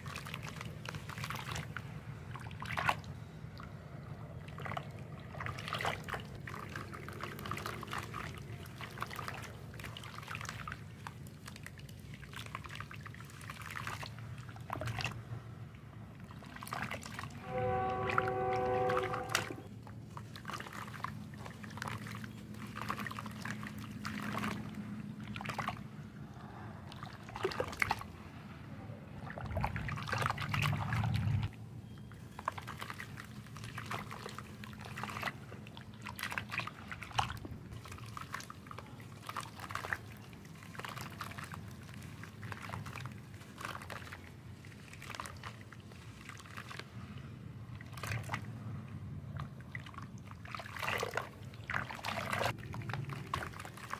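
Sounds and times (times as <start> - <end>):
small splashes: 0.0 - 53.9
trickling pouring water: 32.1 - 53.9.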